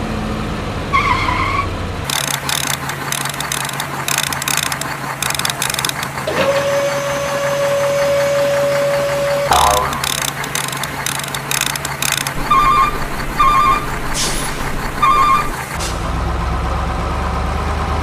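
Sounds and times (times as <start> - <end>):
plastic gears clicking: 2.1 - 6.3, 9.5 - 12.5
steady tone: 9.5 - 12.8.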